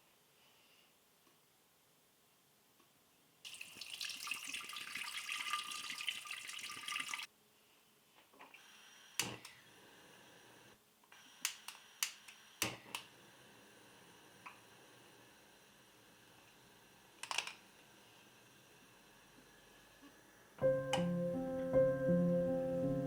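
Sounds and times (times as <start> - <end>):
water running from a tap: 3.5 - 7.3.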